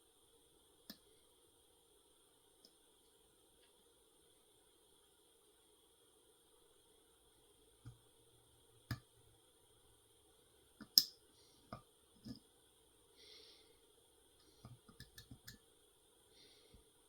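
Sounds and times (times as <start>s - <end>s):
lock pick clicks and taps: 14.9s - 15.6s.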